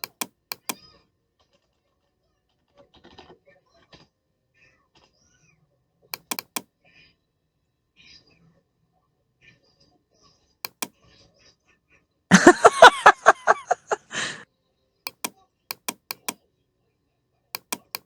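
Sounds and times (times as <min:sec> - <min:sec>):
sharp clicks: 0:00.0 - 0:00.8, 0:06.2 - 0:06.6, 0:10.7 - 0:10.9, 0:15.1 - 0:16.4, 0:17.6 - 0:18.0.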